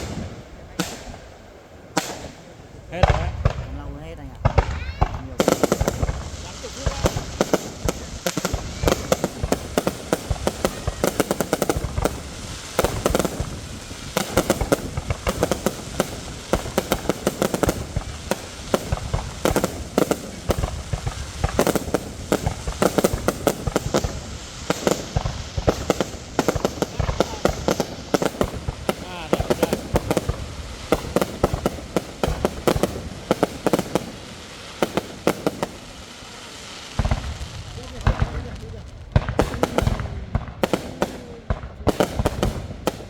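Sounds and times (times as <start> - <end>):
fireworks bangs and pops: 0.0 - 43.0.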